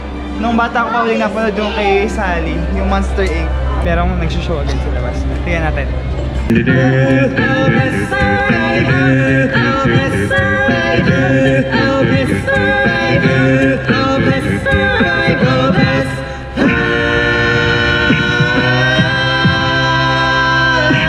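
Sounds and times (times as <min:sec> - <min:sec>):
group singing with music: 0:05.4 - 0:21.0.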